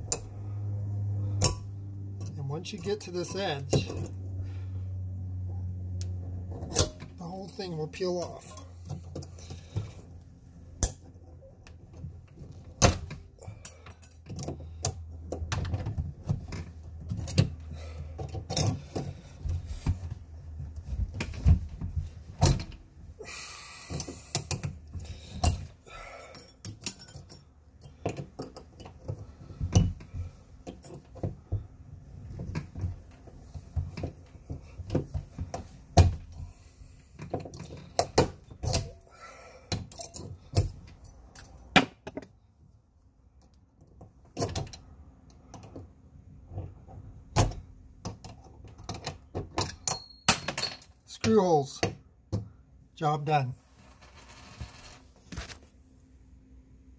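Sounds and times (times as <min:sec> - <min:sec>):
metal clinks taps and creaks: 0:00.0 - 0:00.5, 0:01.3 - 0:04.2, 0:05.9 - 0:10.2, 0:10.8 - 0:20.2, 0:23.9 - 0:31.7, 0:37.2 - 0:39.1, 0:39.7 - 0:42.4, 0:46.5 - 0:52.5.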